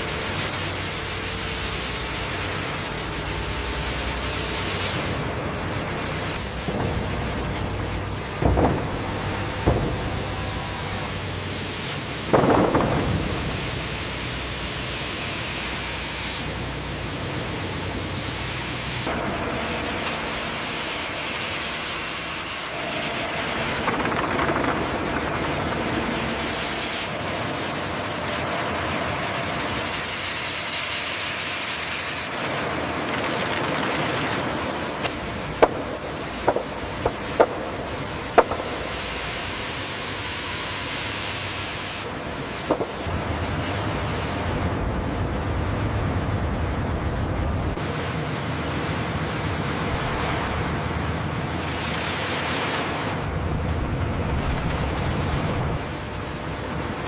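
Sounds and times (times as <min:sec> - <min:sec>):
sawmill machinery hissing rush: 0:00.0 - 0:45.8
sharp knocks: 0:06.5 - 0:11.2, 0:12.3 - 0:13.9, 0:35.6 - 0:38.9.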